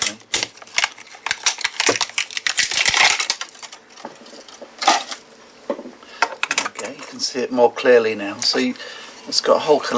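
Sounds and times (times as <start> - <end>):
plastic strapping crackling: 0.0 - 5.2.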